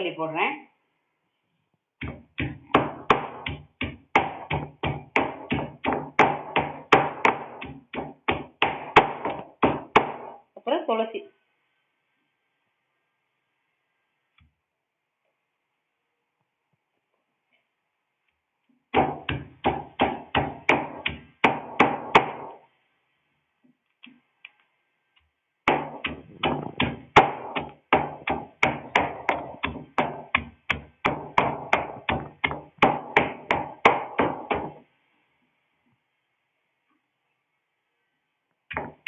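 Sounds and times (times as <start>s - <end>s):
pestle pounding in a mortar: 2.0s - 10.4s, 18.9s - 22.6s, 25.6s - 34.8s, 38.7s - 39.0s.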